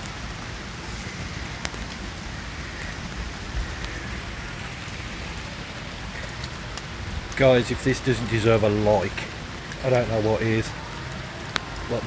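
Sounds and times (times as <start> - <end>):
raindrops tapping near microphone: 0.0 - 12.0
torrential rain pouring: 0.0 - 12.0.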